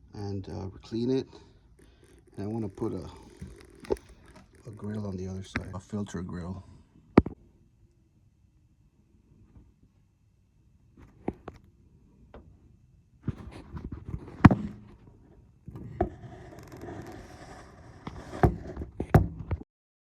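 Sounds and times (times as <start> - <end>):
rustling and scraping: 0.8 - 5.9, 13.2 - 19.6
sharp knocks and clunks: 14.2 - 15.0.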